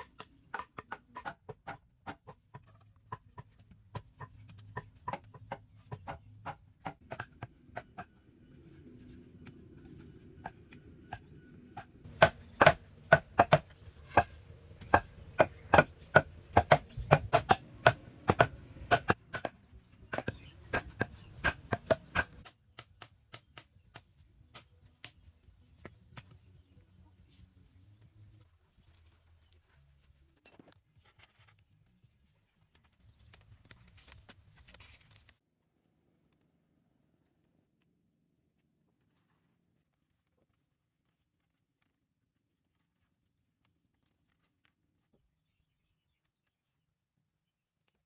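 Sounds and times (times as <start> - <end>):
hand tool chopping strikes: 12.1 - 22.4.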